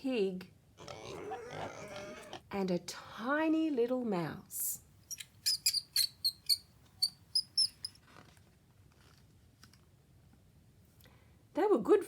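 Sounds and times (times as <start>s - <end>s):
mouse squeaking: 5.1s - 8.0s.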